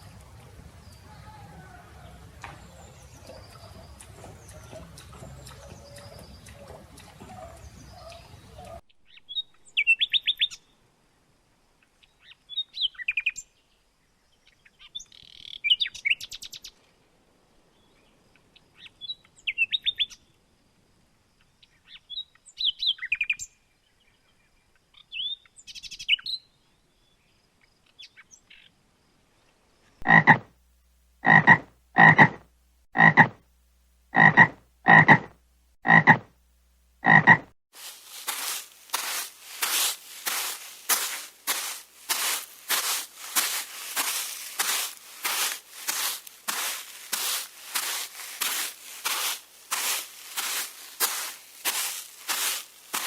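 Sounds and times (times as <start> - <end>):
frog croaking: 30.0 - 30.6, 31.2 - 33.4, 34.1 - 36.4, 37.0 - 37.5.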